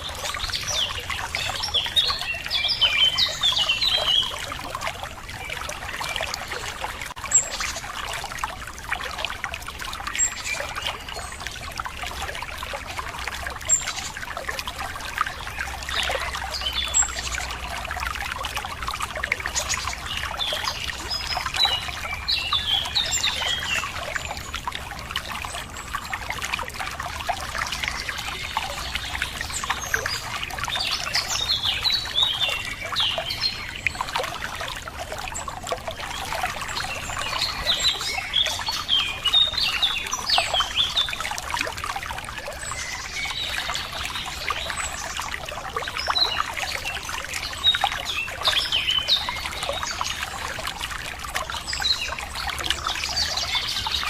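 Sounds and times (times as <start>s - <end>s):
water trickling: 0.0s - 54.0s
small birds chirping: 51.4s - 54.0s.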